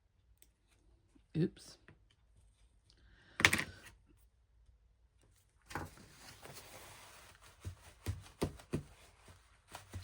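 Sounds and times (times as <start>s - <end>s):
paper rustling: 5.7s - 10.0s.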